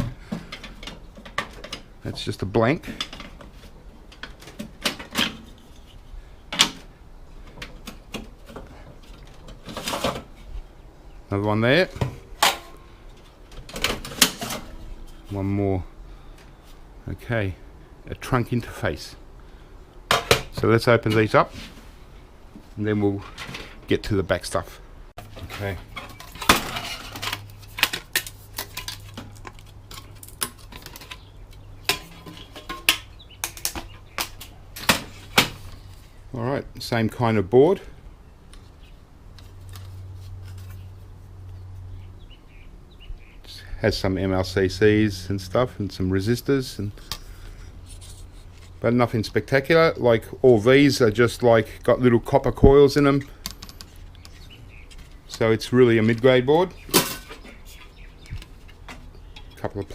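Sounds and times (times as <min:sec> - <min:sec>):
metal and plastic parts clattering: 0:00.0 - 0:05.9, 0:06.5 - 0:10.3, 0:12.0 - 0:14.9, 0:25.2 - 0:35.8, 0:53.2 - 0:55.4, 0:56.1 - 0:59.9.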